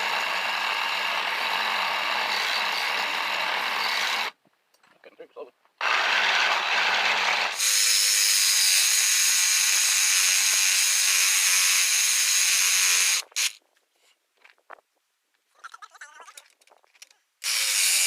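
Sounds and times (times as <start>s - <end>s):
power tool cutting and whining: 0.0s - 4.4s, 5.8s - 13.6s, 17.4s - 18.0s.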